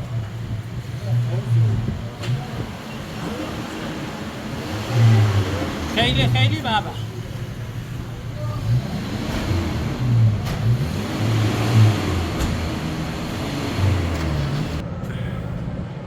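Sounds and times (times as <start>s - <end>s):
vehicle engine running: 0.0s - 15.9s.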